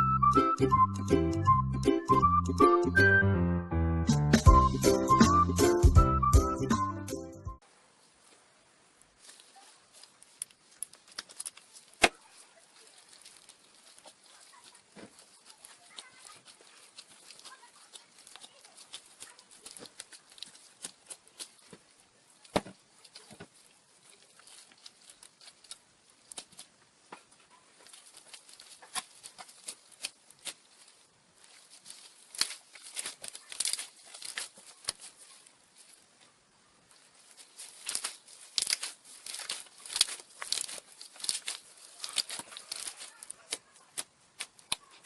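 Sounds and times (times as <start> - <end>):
slime crackling and popping: 9.2 - 26.9, 27.7 - 35.5, 37.0 - 45.0.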